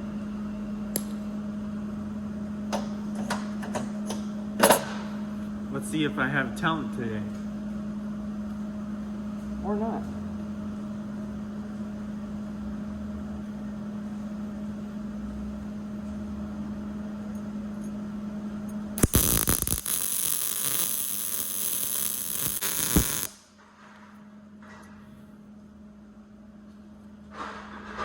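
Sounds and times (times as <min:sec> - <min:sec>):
electrical hum: 0:00.0 - 0:28.0
welding arc crackling and hissing: 0:19.0 - 0:23.5.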